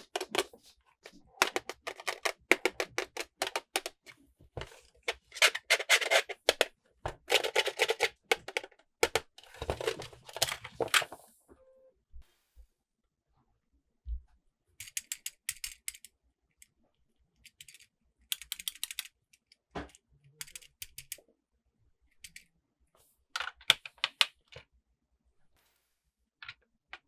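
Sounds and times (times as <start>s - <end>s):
plastic toy pieces clicking: 1.4s - 4.0s, 5.3s - 6.7s, 7.3s - 10.6s, 14.8s - 16.1s, 17.5s - 19.6s, 20.4s - 21.2s, 22.2s - 22.4s.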